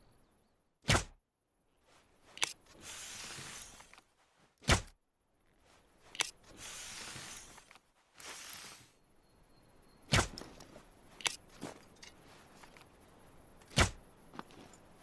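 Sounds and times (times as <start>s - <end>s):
airy whooshing hiss: 2.7s - 3.9s, 6.5s - 7.6s.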